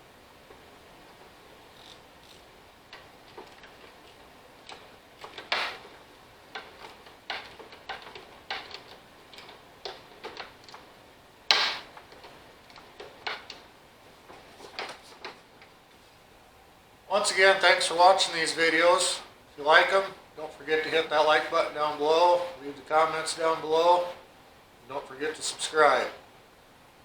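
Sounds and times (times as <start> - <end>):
sharp knocks: 11.5 - 12.0.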